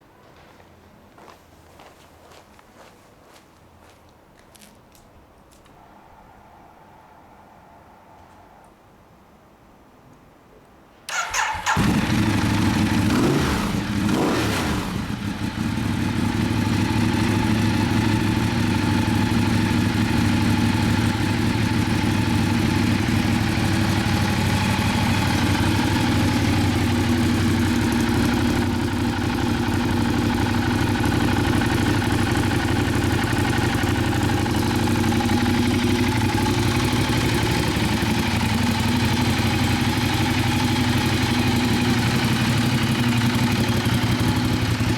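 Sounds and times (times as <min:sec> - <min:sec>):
motorcycle engine revving and idling: 0:11.1 - 0:44.9.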